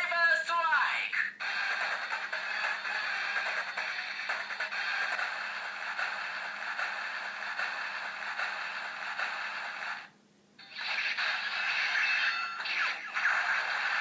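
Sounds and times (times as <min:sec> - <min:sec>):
scratchy electronic whirring: 0:01.4 - 0:14.0.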